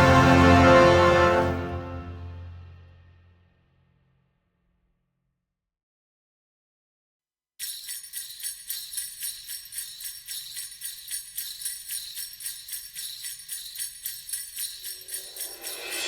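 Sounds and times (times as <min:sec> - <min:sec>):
jingle bells shaken rhythmically: 0:07.6 - 0:16.0.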